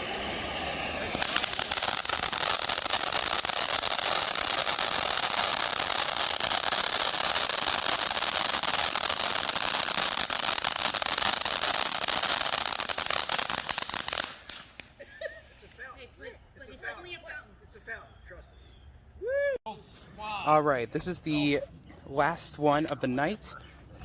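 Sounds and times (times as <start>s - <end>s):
ground firework crackling: 0.0s - 15.9s.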